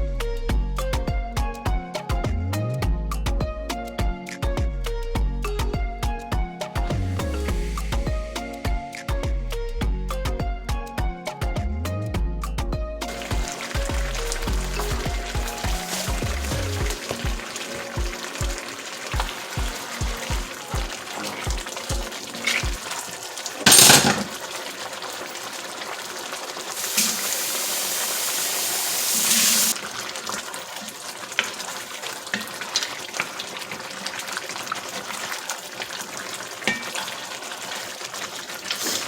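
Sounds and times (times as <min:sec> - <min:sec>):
background music with steady beat: 0:00.0 - 0:23.0
meat sizzling in a pot: 0:13.1 - 0:39.0.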